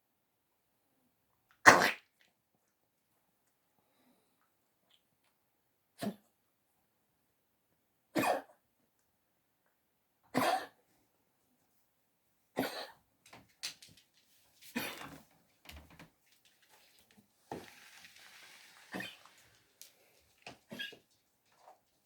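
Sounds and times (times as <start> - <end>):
dog coughing: 8.2 - 8.6, 10.3 - 10.8, 12.6 - 13.0, 14.7 - 15.2, 20.7 - 21.0.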